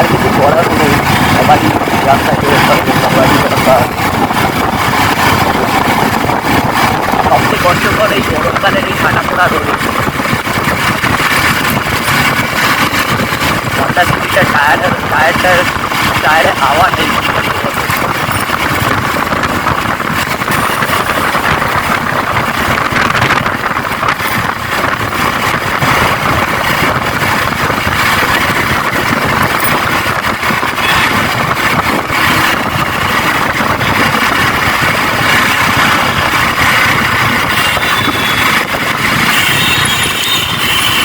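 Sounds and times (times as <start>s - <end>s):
motorcycle engine running: 0.0s - 41.0s
road and traffic noise: 0.0s - 41.0s.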